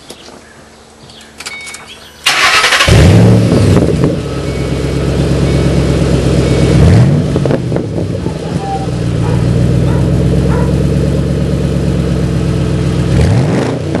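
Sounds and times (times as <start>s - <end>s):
engine starter cranking: 2.2s - 3.3s
car engine loud idle: 2.5s - 8.2s, 8.9s - 13.1s.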